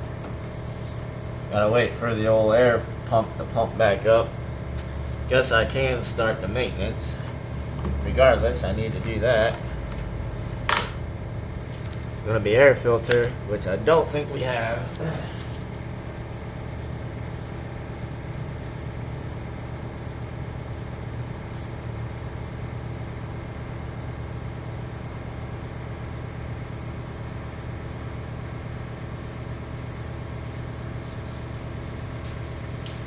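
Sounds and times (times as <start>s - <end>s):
air compressor humming: 0.0s - 33.0s.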